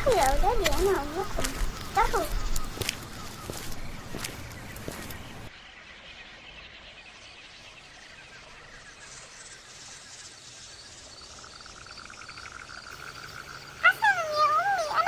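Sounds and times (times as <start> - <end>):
insects chirping: 0.0 - 5.8, 6.7 - 15.0.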